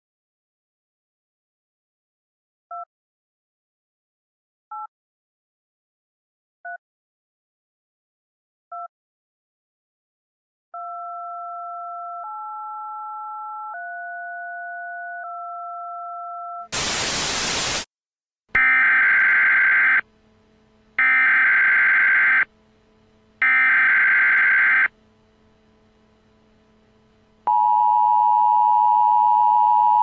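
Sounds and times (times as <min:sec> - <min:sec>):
loud static: 0:16.7 - 0:17.9.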